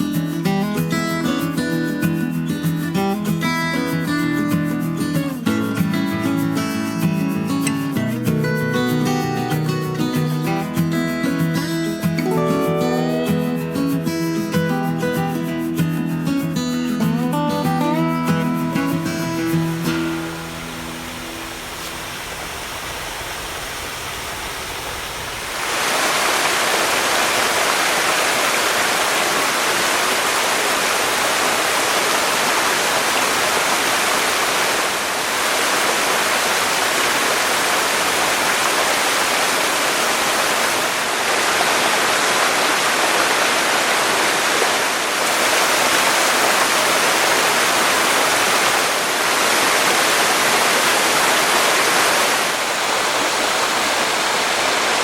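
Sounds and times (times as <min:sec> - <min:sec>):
waterfall rushing: 0:11.6 - 0:55.0.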